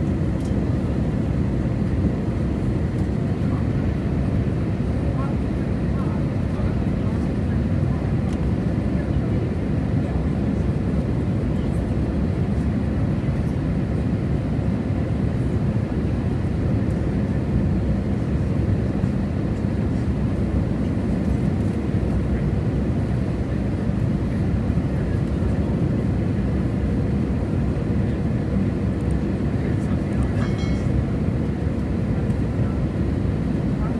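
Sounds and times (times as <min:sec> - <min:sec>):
aircraft cabin engine rumble: 0:00.0 - 0:33.9
faint constant hum: 0:29.7 - 0:31.1.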